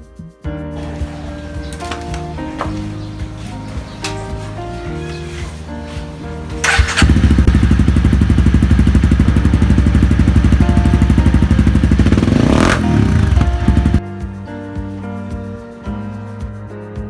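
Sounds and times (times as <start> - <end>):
motorcycle engine running: 0.8 - 14.0.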